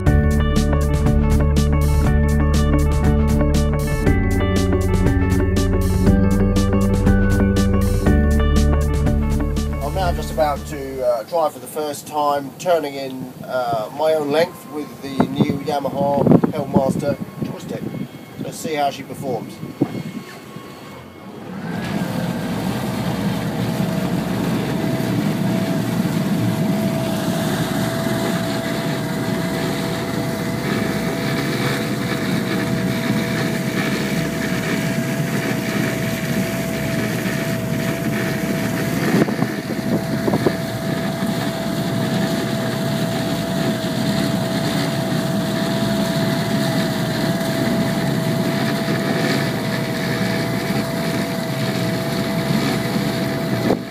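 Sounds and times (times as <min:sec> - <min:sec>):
outboard motors droning with whine: 0:00.0 - 0:53.9.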